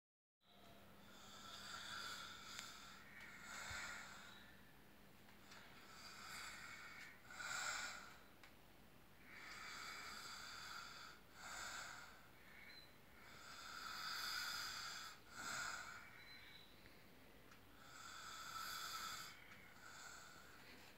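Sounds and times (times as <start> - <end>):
people snoring: 1.0 - 4.6, 5.5 - 8.3, 9.2 - 16.2, 17.8 - 20.7.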